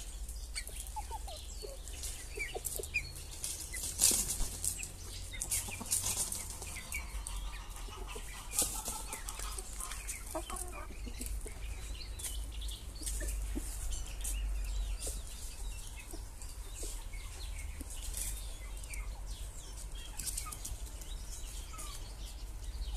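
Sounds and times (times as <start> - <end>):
chickens clucking: 0.0 - 22.9
clicks and rustles: 1.9 - 6.8.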